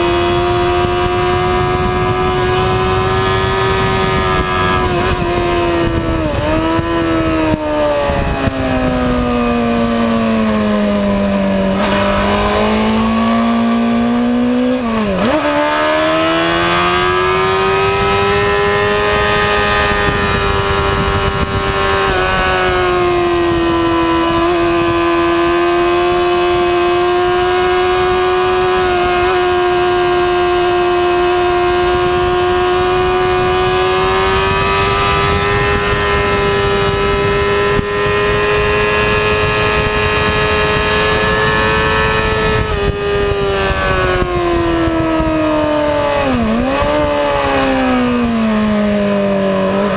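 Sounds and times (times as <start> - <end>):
motorcycle engine revving: 0.0 - 49.9
wind rush: 0.0 - 49.9.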